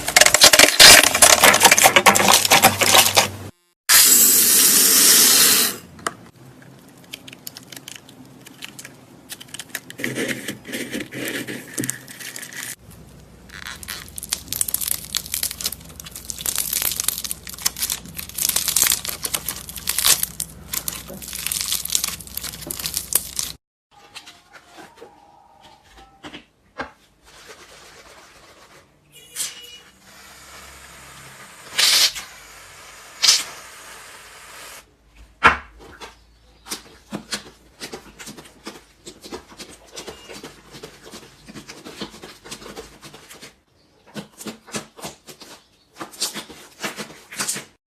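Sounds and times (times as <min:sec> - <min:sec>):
slime crackling and squishing: 0:06.7 - 0:10.3, 0:11.9 - 0:23.6.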